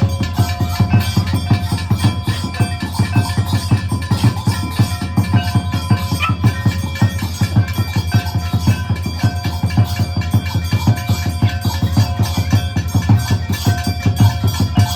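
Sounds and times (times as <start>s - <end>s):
fast steady drumming: 0.0s - 14.9s
held ringing tones: 0.0s - 14.9s.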